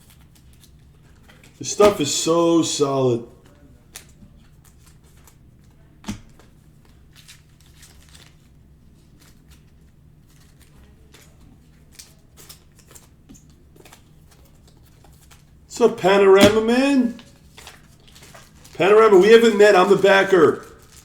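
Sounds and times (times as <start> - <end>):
trading cards rustling: 15.8 - 21.0.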